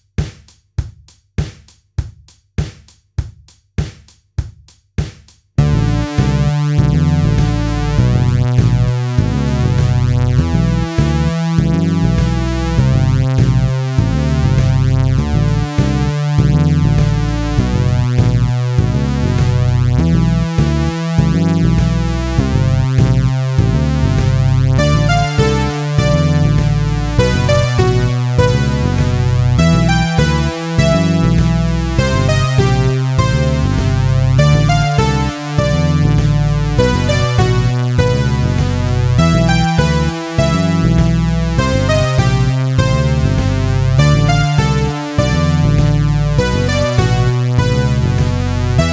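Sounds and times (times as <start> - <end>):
electronic synthesizer music: 5.6 - 48.9.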